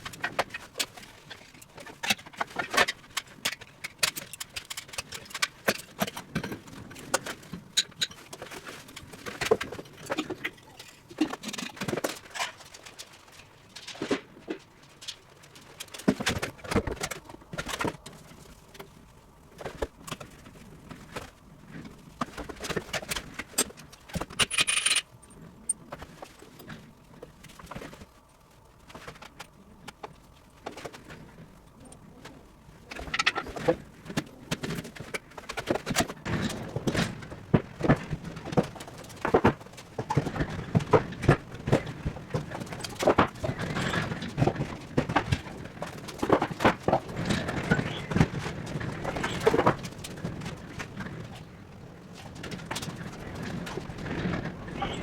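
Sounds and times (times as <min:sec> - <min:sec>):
metallic clinking and knocking: 0:24.3 - 0:25.1.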